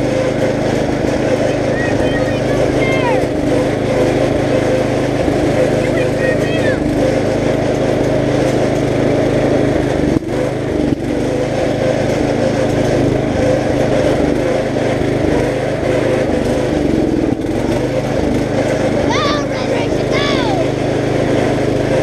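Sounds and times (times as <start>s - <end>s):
riding lawn mower engine running: 0.0s - 22.0s.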